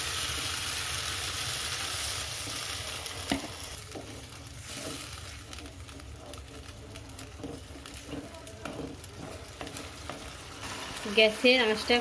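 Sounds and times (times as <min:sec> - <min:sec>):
spice paste sizzling in a pan: 0:00.0 - 0:12.0.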